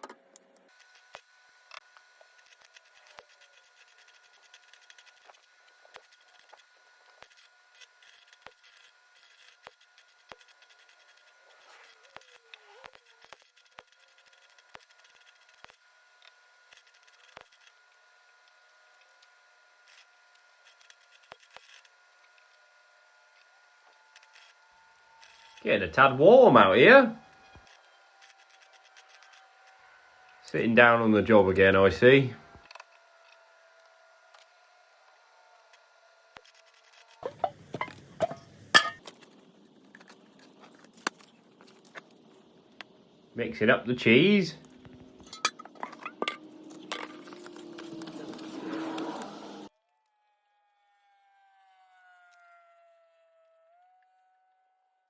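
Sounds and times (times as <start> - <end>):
scraping and clinking: 37.2 - 39.1, 45.2 - 47.6
faint steady hum: 37.2 - 48.5.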